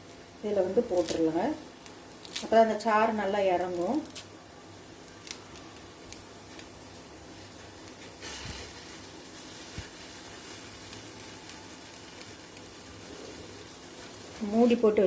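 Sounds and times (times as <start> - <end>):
pot of water sizzling and hissing: 0.0 - 15.0.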